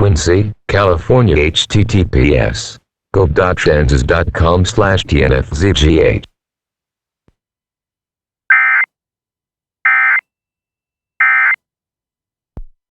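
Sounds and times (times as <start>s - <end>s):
digital data tone bursts: 9.9s - 10.2s.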